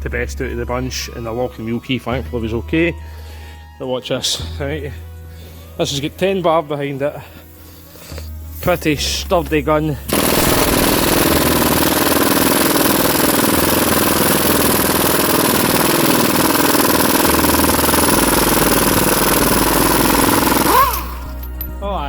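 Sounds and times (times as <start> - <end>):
air impact wrench hammering: 10.1 - 21.7.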